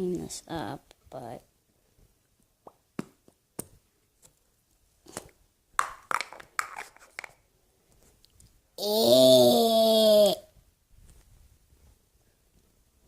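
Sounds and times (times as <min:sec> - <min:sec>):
clicks taps and handling noises: 0:05.1 - 0:08.6.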